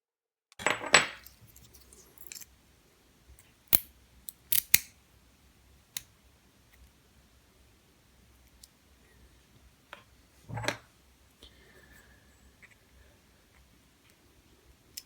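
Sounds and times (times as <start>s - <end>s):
small steel tools clattering: 0.7s - 2.5s.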